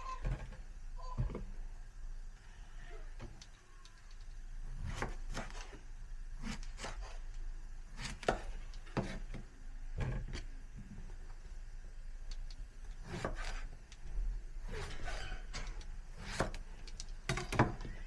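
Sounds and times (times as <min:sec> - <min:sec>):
knife chopping on wooden board: 0:04.7 - 0:05.8, 0:07.9 - 0:09.4, 0:13.0 - 0:13.6, 0:16.1 - 0:16.6.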